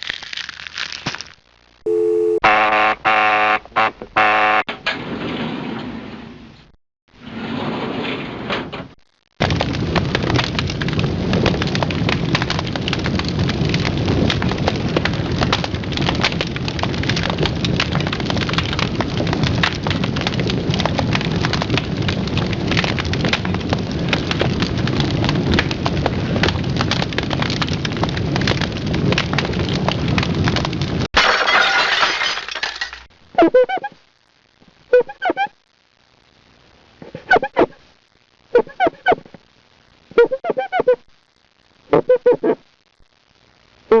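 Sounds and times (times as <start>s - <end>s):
dense crackling and snapping: 0.0s - 1.8s, 8.9s - 34.9s.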